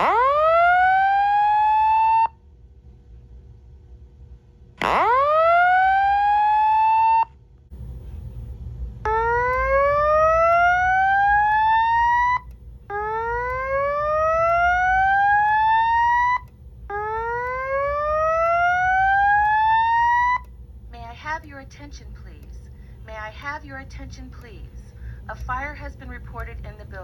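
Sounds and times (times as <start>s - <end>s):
rising whoop alarm tone: 0.0s - 2.4s, 4.8s - 7.3s, 9.1s - 20.5s
steady alarm tone: 0.0s - 2.4s, 4.8s - 8.0s, 8.8s - 27.0s.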